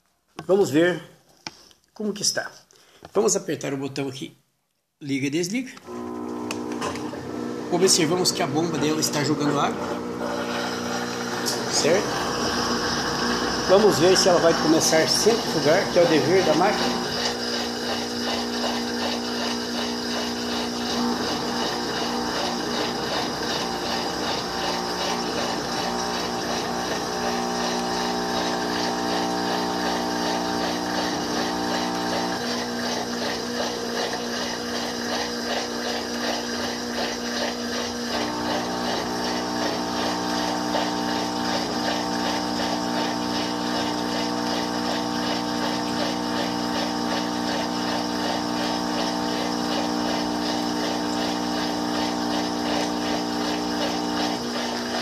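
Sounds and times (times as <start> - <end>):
drain pump motor hum: 5.8 - 55.0
water rushing: 11.0 - 29.0.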